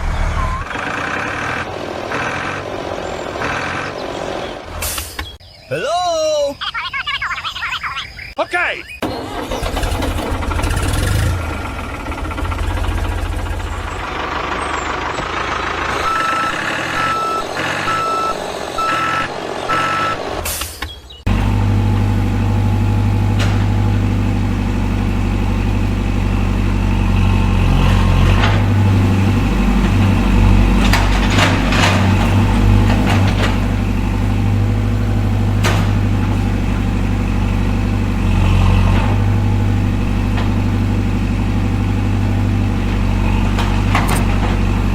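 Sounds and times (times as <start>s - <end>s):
heavy engine drone: 0.0s - 5.4s, 9.0s - 44.9s
truck engine running: 0.0s - 5.4s, 9.0s - 44.9s
reversing alarm beeping: 0.2s - 0.7s, 16.0s - 20.3s.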